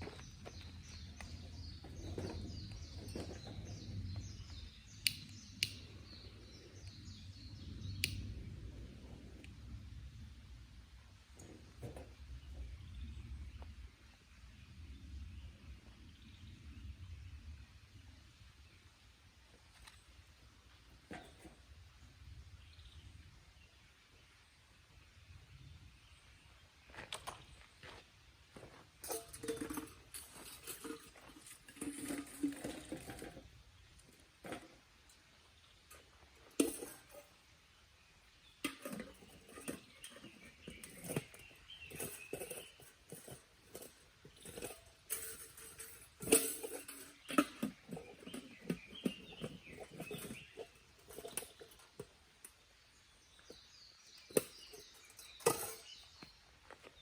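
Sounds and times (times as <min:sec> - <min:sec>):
objects being handled: 0:28.6 - 0:35.2, 0:38.6 - 0:52.6.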